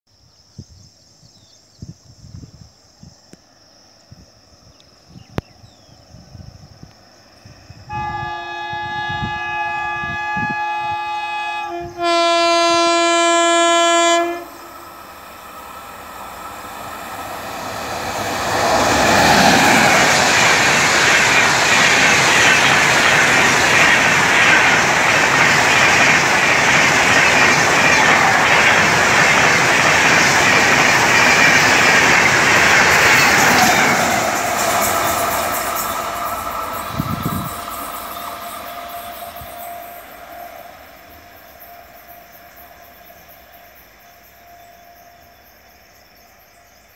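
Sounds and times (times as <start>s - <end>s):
train rushing past: 5.9s - 46.9s
train horn blast: 7.8s - 15.0s, 36.2s - 43.2s
train wheel clatter: 17.6s - 40.5s.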